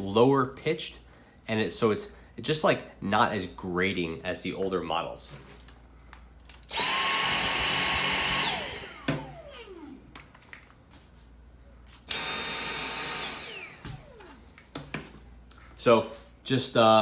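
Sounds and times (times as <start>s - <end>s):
vacuum motor whine spinning down: 6.7s - 10.1s, 12.1s - 14.4s.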